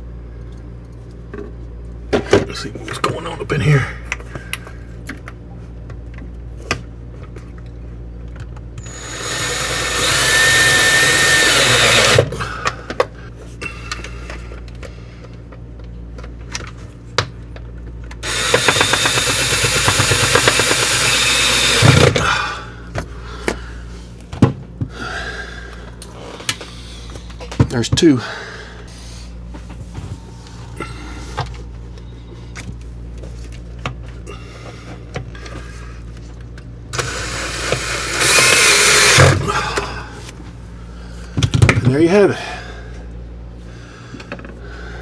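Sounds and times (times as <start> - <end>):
power drill driving screws: 8.8 - 12.4, 18.2 - 22.3, 37.0 - 39.5.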